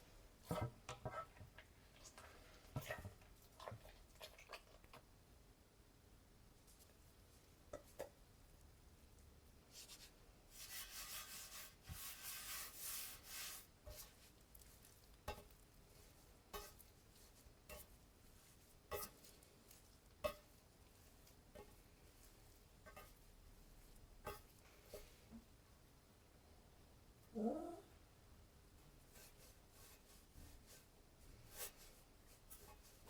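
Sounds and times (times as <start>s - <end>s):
rubbing and scraping in a bowl: 0.0s - 5.2s, 9.4s - 25.5s, 28.7s - 33.0s.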